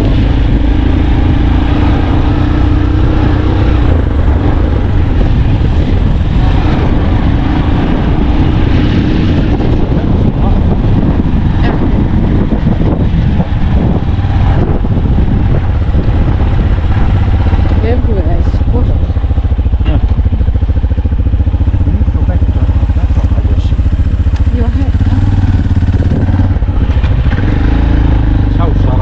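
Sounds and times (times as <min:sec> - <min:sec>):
vehicle engine and road rumble: 0:00.0 - 0:29.0.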